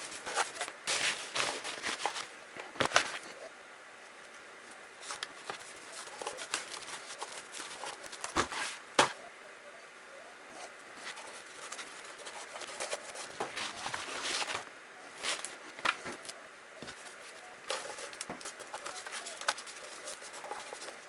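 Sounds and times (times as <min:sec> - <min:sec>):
paintbrush scratching on plastic: 0:05.0 - 0:08.8, 0:11.0 - 0:14.6, 0:16.8 - 0:21.0.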